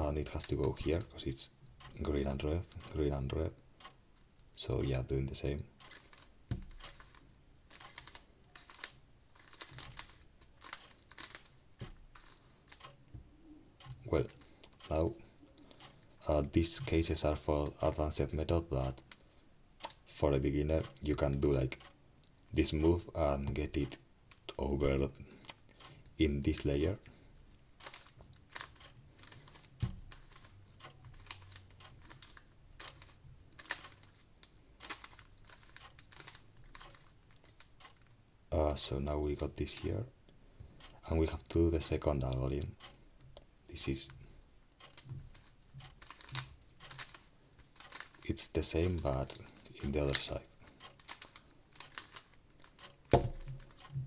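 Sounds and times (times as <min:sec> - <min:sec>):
puzzle cube layers clicking: 0:05.6 - 0:15.2, 0:27.7 - 0:38.1, 0:44.8 - 0:54.0.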